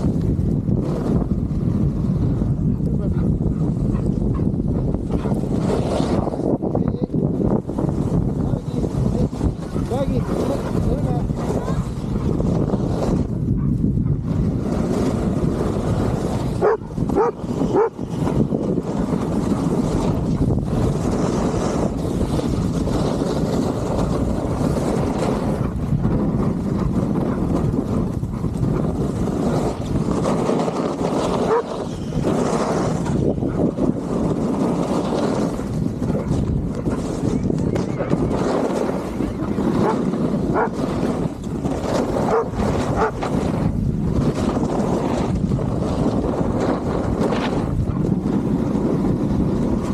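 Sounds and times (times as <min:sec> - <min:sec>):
wind buffeting microphone: 0:00.0 - 0:49.9
dogs barking: 0:16.6 - 0:18.0, 0:39.4 - 0:40.8, 0:42.2 - 0:43.2.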